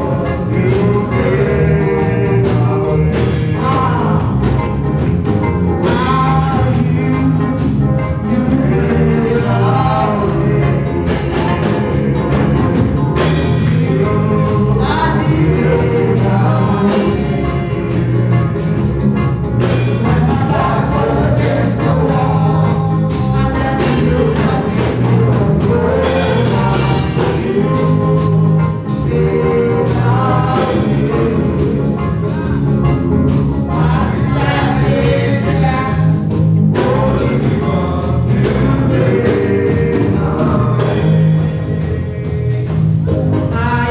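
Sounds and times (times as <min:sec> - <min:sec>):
gospel singing: 0:00.0 - 0:43.9
instrumental band accompaniment: 0:00.0 - 0:43.9.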